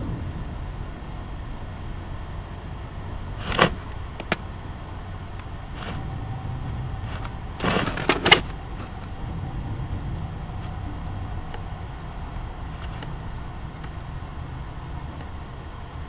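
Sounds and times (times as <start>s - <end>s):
low rumble: 0.0s - 16.0s
sharp bangs in the sky: 3.3s - 4.8s.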